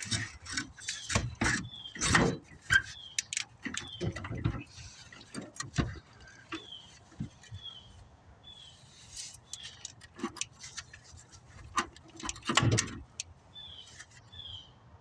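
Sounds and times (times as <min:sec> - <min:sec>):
bird chirping: 0:00.5 - 0:10.7, 0:13.5 - 0:14.8.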